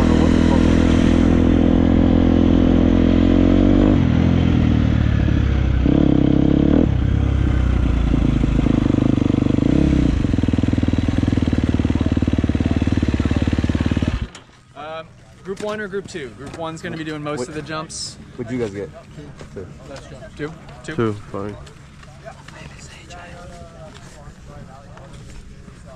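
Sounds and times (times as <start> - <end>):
dirt bike engine revving: 0.0 - 14.4.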